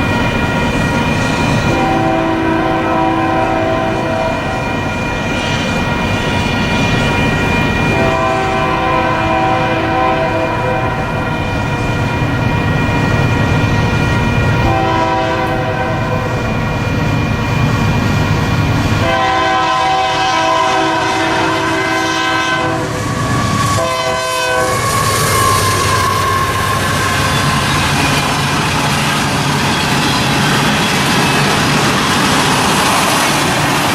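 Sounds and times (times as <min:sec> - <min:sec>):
passing train rumble: 0:00.0 - 0:33.9
locomotive air horn blasts: 0:01.6 - 0:04.7, 0:07.9 - 0:11.4, 0:14.6 - 0:16.4, 0:19.0 - 0:27.6.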